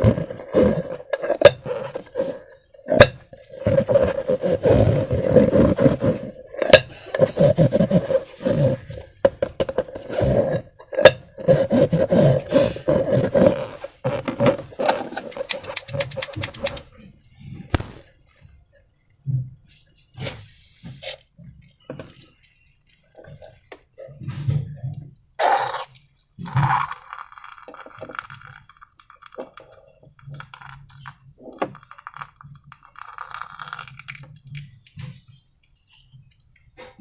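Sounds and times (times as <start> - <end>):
containers clinking and scraping: 0.0 - 8.3, 14.8 - 16.9.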